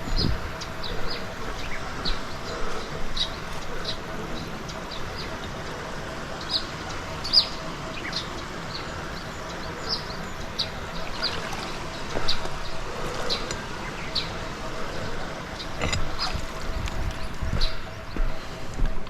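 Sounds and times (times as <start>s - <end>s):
running water: 0.0s - 18.6s.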